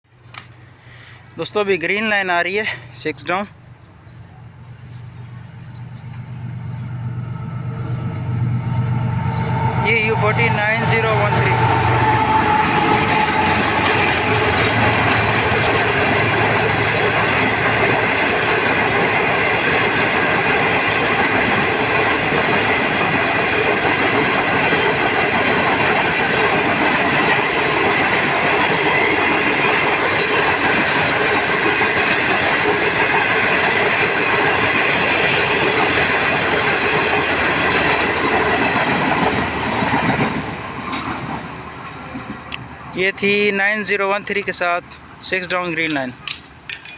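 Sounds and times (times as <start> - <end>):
passenger train passing: 0.1 - 46.9
wheels clacking over rail joints: 11.6 - 43.4.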